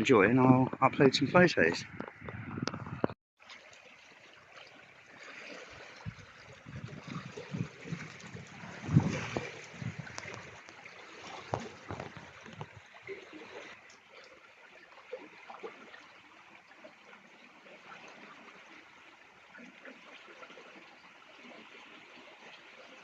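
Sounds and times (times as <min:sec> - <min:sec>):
wind buffeting microphone: 0:00.7 - 0:03.2, 0:05.9 - 0:10.6.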